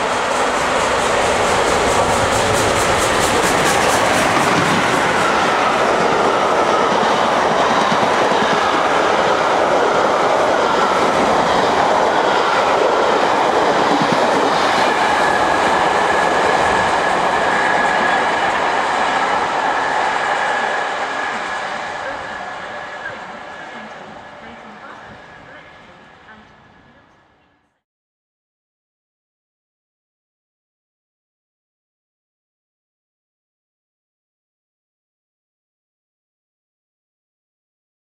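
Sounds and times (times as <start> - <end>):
train rumbling: 0.0 - 27.5.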